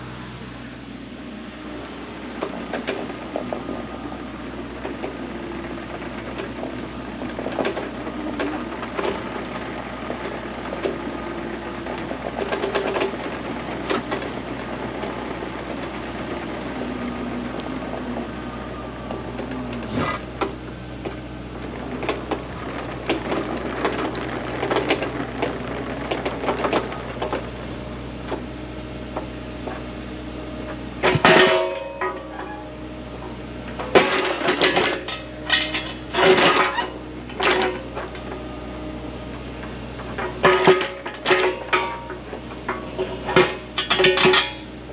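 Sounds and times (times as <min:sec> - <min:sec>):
excavator engine running: 0:00.0 - 0:44.9
metal clanks and knocks: 0:30.6 - 0:38.4, 0:39.6 - 0:44.7.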